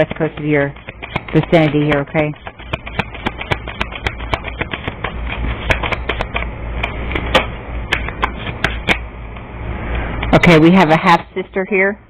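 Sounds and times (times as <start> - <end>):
cards being shuffled: 0.0 - 9.0
low steady hum: 0.0 - 12.0.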